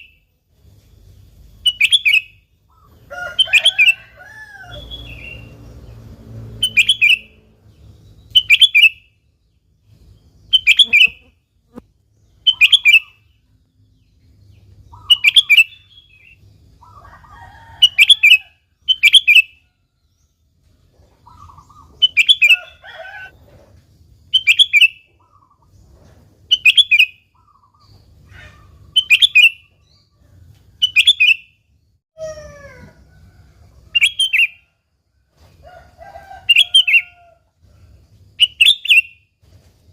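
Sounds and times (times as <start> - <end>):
bulbul calling: 6.6 - 7.4, 10.5 - 11.8, 12.4 - 13.3, 14.9 - 17.1, 21.2 - 22.8.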